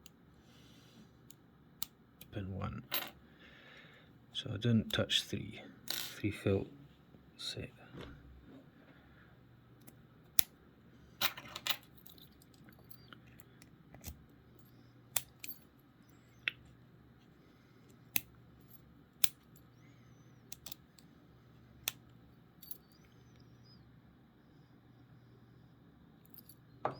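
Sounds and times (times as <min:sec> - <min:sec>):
metallic padlock clicks: 0:14.0 - 0:15.6, 0:18.1 - 0:18.4, 0:19.2 - 0:19.6, 0:20.5 - 0:21.0.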